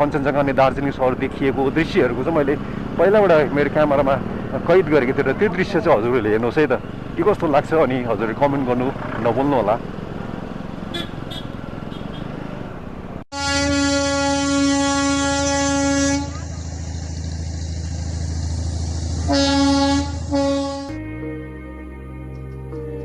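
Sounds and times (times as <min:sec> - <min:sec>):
train running rumble: 0:00.0 - 0:11.9, 0:13.0 - 0:20.9
train horn blast: 0:10.9 - 0:12.2, 0:13.3 - 0:16.6, 0:19.2 - 0:21.0.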